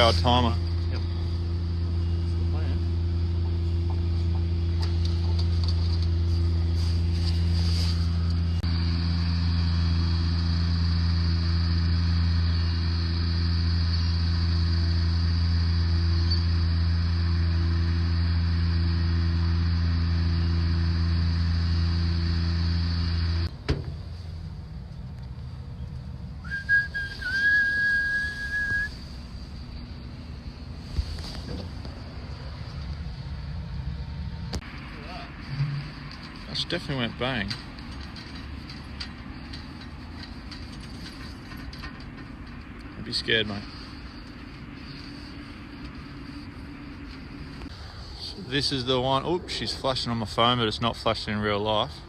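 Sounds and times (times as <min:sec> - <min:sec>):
low machine hum: 0:00.0 - 0:52.0
high whistled note: 0:26.4 - 0:29.1.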